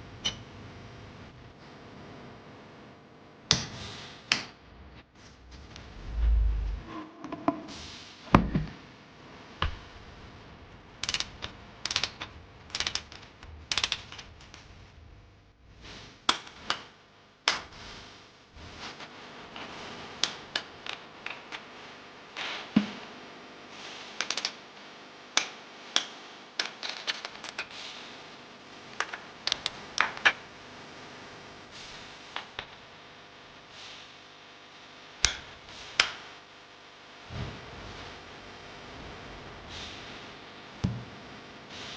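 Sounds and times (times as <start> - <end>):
heavy low thump: 5.4 - 7.7.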